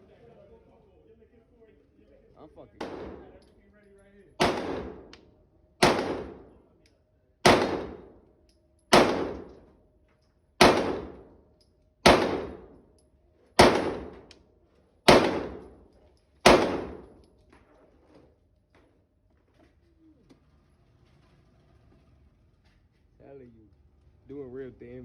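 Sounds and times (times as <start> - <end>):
pistol shots with ringing echo: 2.8 - 3.5, 4.4 - 5.2, 5.8 - 6.6, 7.4 - 8.3, 8.9 - 9.7, 10.6 - 11.4, 12.0 - 12.9, 13.6 - 14.3, 15.1 - 17.3.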